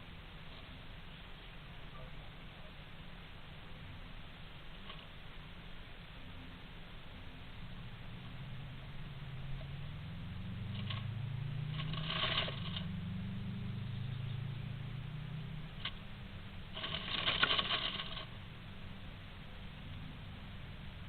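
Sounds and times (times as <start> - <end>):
low hum: 0.0 - 21.0
bird scratching and tapping: 4.8 - 5.1, 10.7 - 13.0, 16.7 - 18.4.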